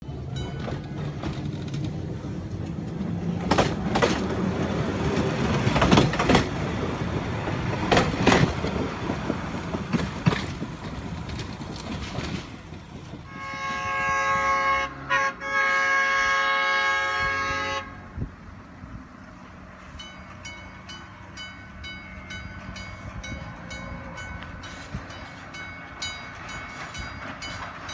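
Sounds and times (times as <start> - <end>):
locomotive clanks: 0.0 - 13.8, 20.1 - 27.9
locomotive rumbling past: 0.0 - 27.9
multi-note locomotive horn: 13.3 - 18.3.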